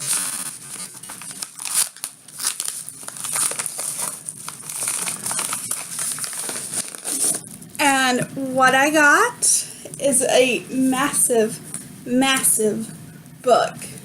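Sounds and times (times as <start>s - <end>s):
packaging crinkling and tearing: 0.0s - 7.8s.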